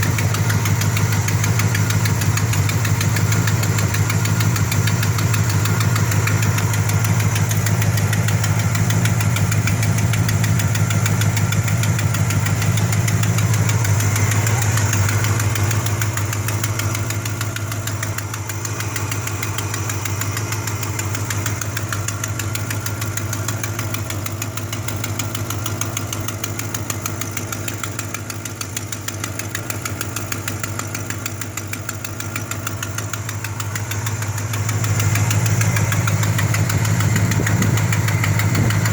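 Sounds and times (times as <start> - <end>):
exhaust leak ticking: 0.0 - 38.9
vehicle engine idling: 0.0 - 38.9.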